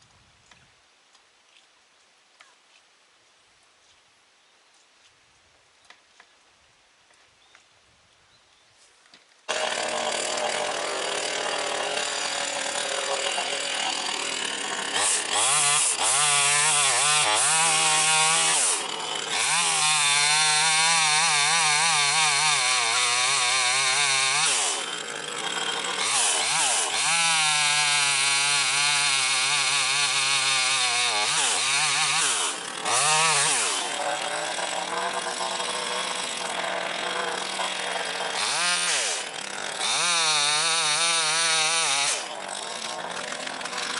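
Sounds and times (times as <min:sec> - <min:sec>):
chainsaw cutting logs: 0:09.1 - 0:43.9.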